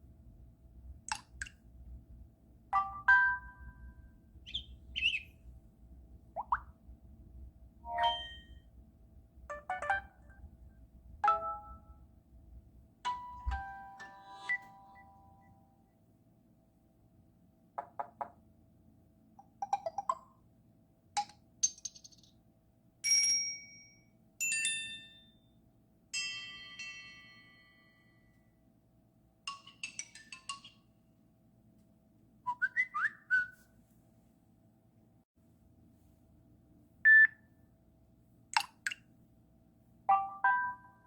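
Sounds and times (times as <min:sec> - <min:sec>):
notification chimes: 0:07.9 - 0:08.5
bell-like ding: 0:08.0 - 0:08.6.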